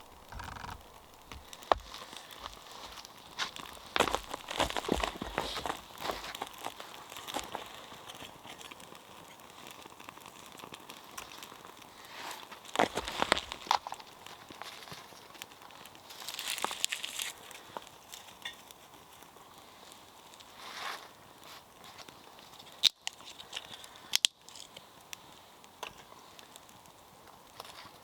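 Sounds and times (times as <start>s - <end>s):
fire steel scraping: 0.0s - 17.8s
tinder crinkling and crackling: 0.0s - 28.0s
sharp clicks: 0.2s - 1.9s.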